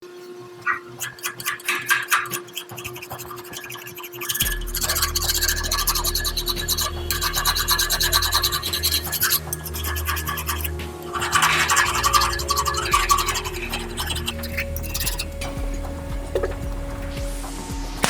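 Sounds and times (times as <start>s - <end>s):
sizzling crackle: 0.1s - 18.0s
sharp clicks and crackles: 0.6s - 17.4s
welder deep hum: 4.2s - 18.0s.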